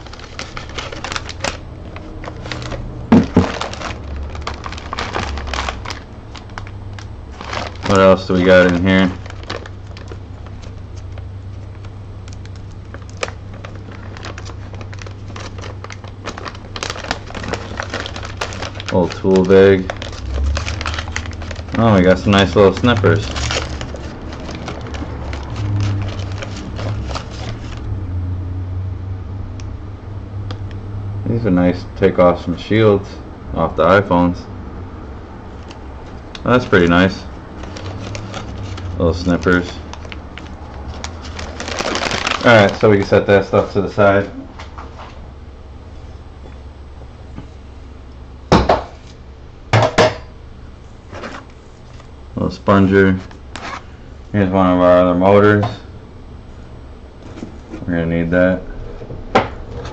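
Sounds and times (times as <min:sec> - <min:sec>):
packaging crinkling and clicks: 0:00.0 - 0:27.9, 0:35.6 - 0:43.2
steady low hum: 0:00.0 - 0:59.9.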